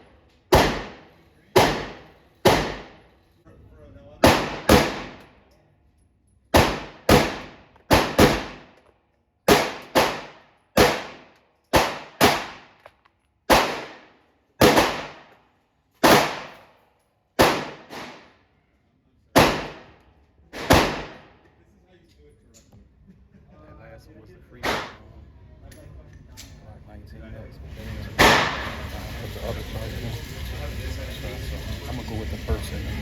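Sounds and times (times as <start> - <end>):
pistol shots: 0.5 - 3.0, 4.2 - 5.3, 6.5 - 8.7, 9.5 - 12.8, 13.5 - 15.3, 16.0 - 16.7, 17.4 - 18.3, 19.4 - 20.0, 20.6 - 21.4, 24.6 - 25.0, 28.2 - 28.6.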